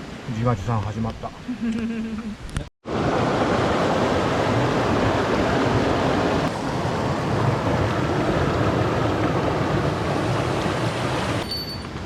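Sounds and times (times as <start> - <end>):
stream rushing: 2.8 - 11.5.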